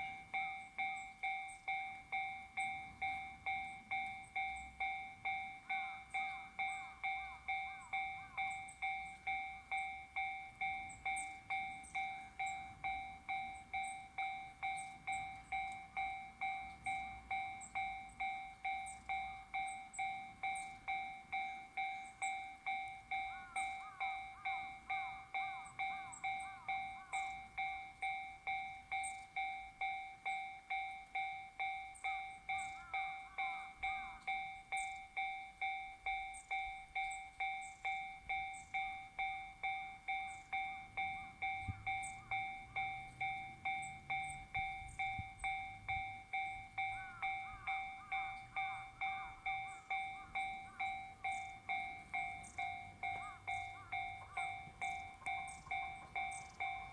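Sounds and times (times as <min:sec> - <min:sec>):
level-crossing alarm ding: 0:00.0 - 0:56.9.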